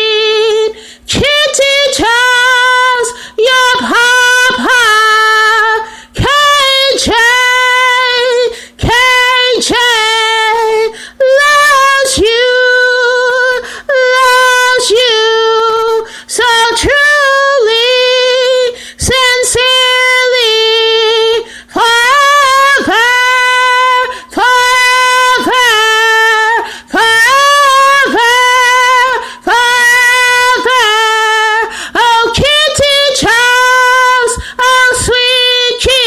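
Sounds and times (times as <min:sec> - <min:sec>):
woman singing unaccompanied: 0:00.0 - 0:36.0
quick breaths: 0:00.7 - 0:01.1, 0:03.2 - 0:03.4, 0:05.9 - 0:06.2, 0:08.5 - 0:08.8, 0:10.9 - 0:11.2, 0:18.8 - 0:19.0, 0:21.4 - 0:21.8, 0:26.7 - 0:26.9, 0:31.7 - 0:32.0.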